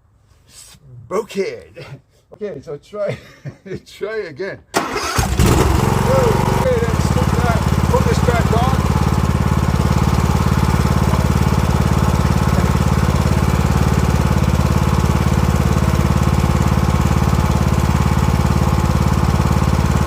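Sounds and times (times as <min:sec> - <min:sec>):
lawn mower engine running: 0:04.8 - 0:20.0.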